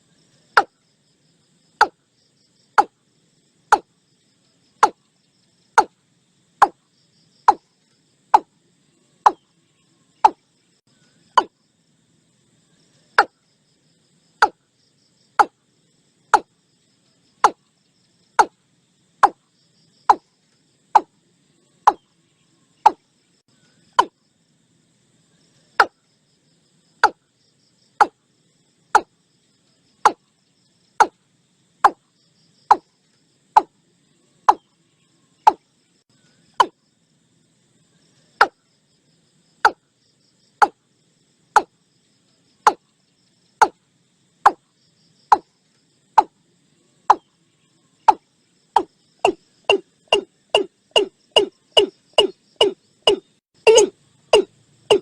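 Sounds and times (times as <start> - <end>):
bird calling sharp notes: 48.8 - 55.0.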